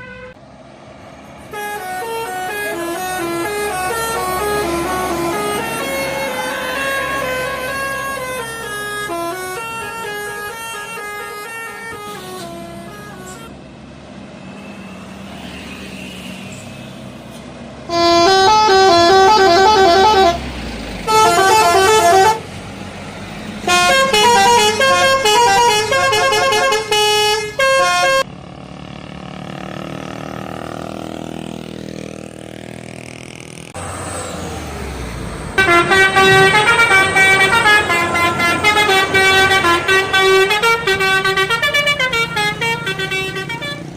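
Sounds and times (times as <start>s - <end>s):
bus horns playing tunes: 0.0s - 0.4s, 1.4s - 13.6s, 17.8s - 22.6s, 23.5s - 28.3s, 35.5s - 43.9s
engine and traffic noise: 0.0s - 43.9s
road noise: 0.0s - 43.9s.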